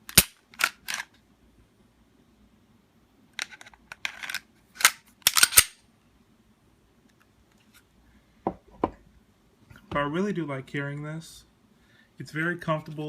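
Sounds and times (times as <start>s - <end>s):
pistol parts clicking and clacking: 0.1s - 1.1s, 3.4s - 5.8s.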